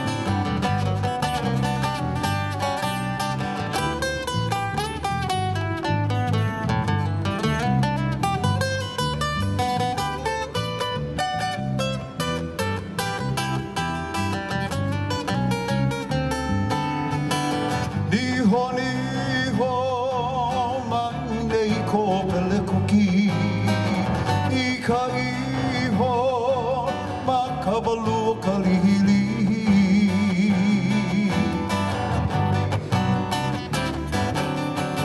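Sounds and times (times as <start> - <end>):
strummed acoustic guitars: 0.0 - 35.0
person singing with vibrato: 17.9 - 31.9.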